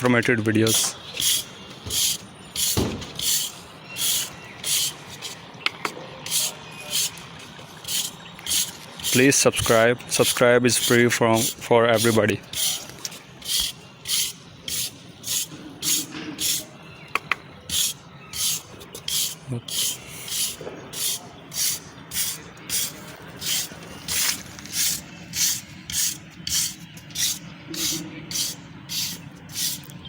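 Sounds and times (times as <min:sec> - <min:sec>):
rhythmic rubbing strokes: 0:00.6 - 0:05.5, 0:06.2 - 0:16.7, 0:17.7 - 0:29.9
sharp clicks: 0:17.1 - 0:17.4.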